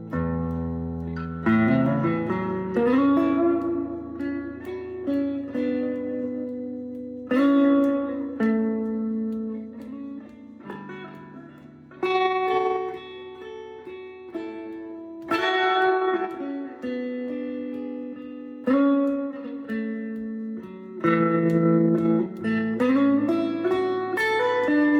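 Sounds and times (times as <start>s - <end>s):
slow guitar playing: 0.0s - 24.9s.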